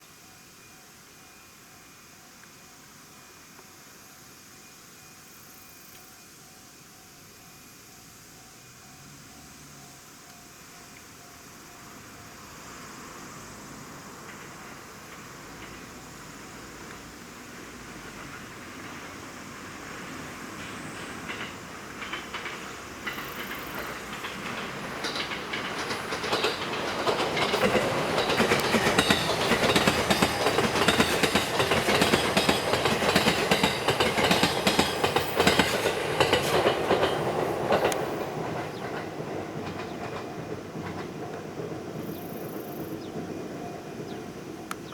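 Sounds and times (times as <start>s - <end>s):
electric train passing: 0.0s - 44.9s
wheels clacking over rail joints: 14.0s - 44.9s.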